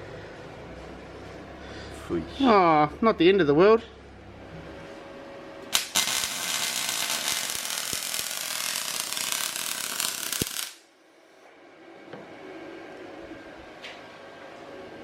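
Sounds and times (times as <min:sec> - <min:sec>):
welding arc crackling and hissing: 0:05.7 - 0:10.9.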